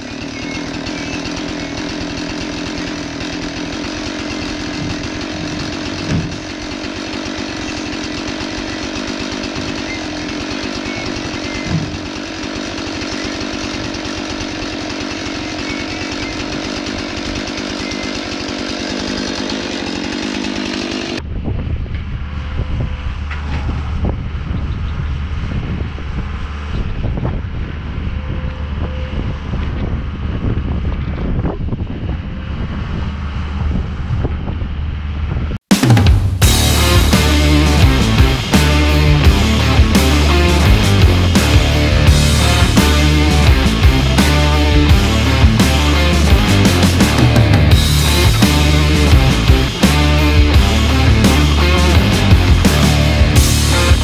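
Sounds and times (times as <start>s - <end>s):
chainsaw running: 0.0s - 21.3s, 35.7s - 54.0s
low engine rumble: 21.1s - 35.6s, 36.2s - 54.0s
wind on microphone: 21.2s - 35.6s.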